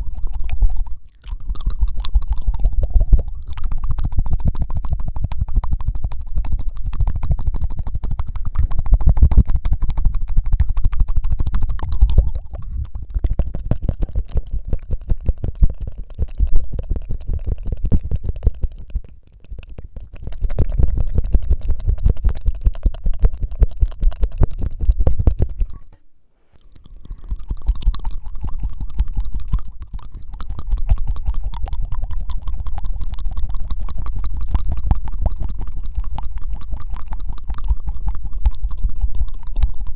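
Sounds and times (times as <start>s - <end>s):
tongue-fluttering mouth clicks: 0.0s - 39.9s.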